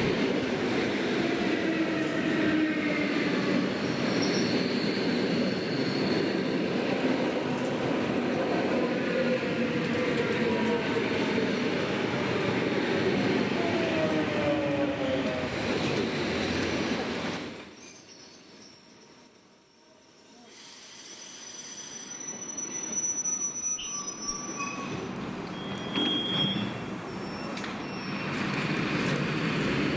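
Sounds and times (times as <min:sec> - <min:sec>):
wheel and brake squeal: 0:03.9 - 0:06.3, 0:20.2 - 0:28.7.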